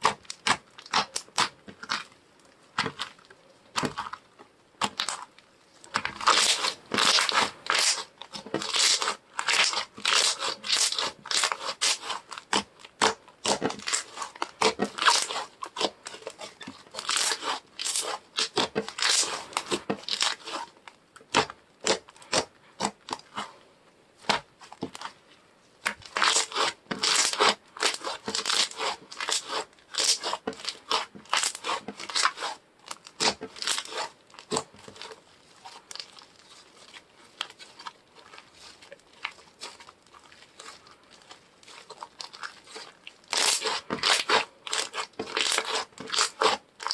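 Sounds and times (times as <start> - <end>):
slime squished by hand: 0.0 - 4.2, 4.8 - 23.5, 25.8 - 46.9.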